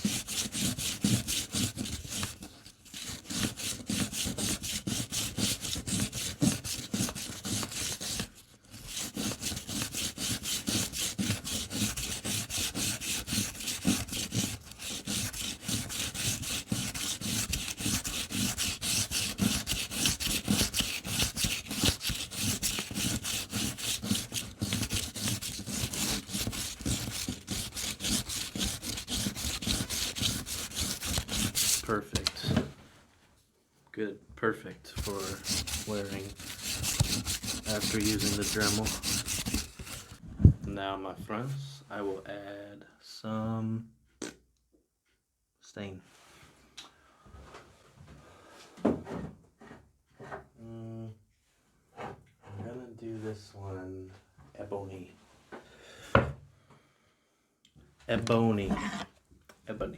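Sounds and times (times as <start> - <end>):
wooden ring sanding on sandpaper: 0.0 - 32.0, 35.0 - 40.2.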